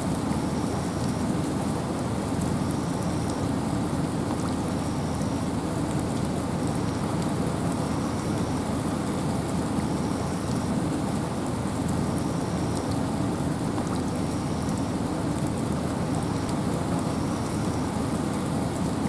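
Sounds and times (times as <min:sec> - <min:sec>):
rain with wind in forest: 0:00.0 - 0:19.0.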